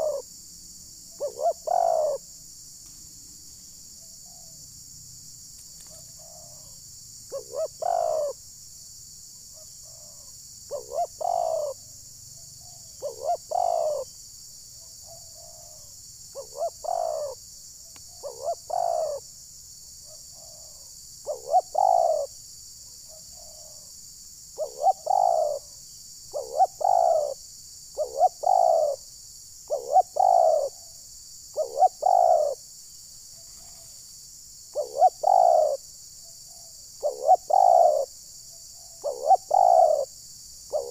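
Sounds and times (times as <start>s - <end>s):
dove cooing: 0.0s - 0.3s, 1.1s - 2.3s, 5.8s - 8.4s, 9.9s - 11.9s, 12.6s - 14.1s, 15.1s - 17.4s, 18.1s - 19.2s, 20.4s - 22.4s, 24.6s - 25.7s, 26.3s - 27.4s, 28.0s - 29.0s, 29.7s - 30.8s, 31.5s - 32.6s, 34.7s - 35.8s, 37.0s - 38.2s, 39.0s - 40.1s.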